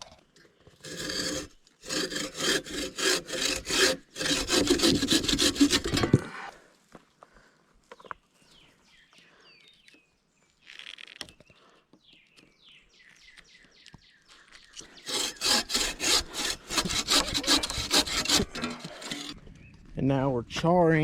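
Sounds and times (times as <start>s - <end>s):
tool rasping on wood: 0.8s - 6.3s, 14.9s - 19.4s.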